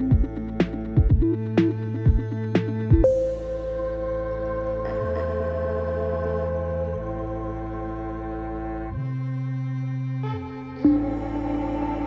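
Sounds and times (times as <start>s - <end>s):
held keyboard chords: 0.0s - 8.8s.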